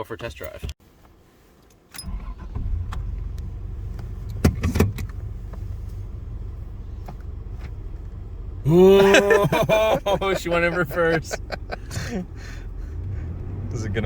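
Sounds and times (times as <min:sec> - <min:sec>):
car engine rumbling: 0:00.5 - 0:14.0.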